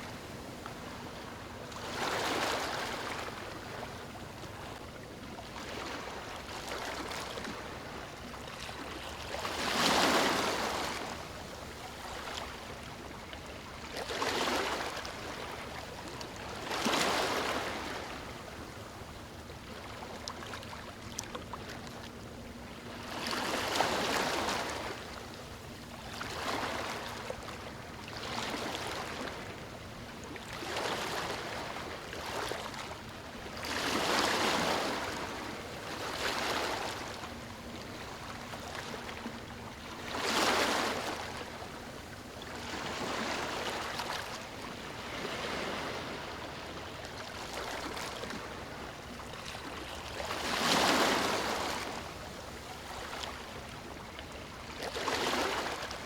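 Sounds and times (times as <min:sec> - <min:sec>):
ocean waves breaking: 0:33.6 - 0:53.7, 0:54.8 - 0:56.0.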